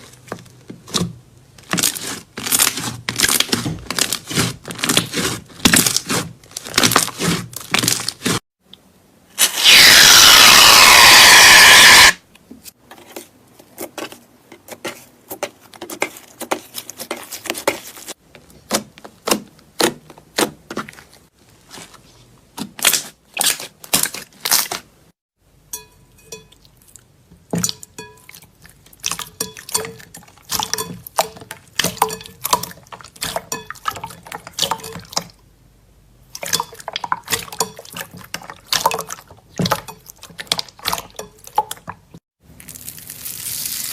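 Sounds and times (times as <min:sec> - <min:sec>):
slime squishing by hand: 0:00.0 - 0:08.4, 0:13.8 - 0:24.9.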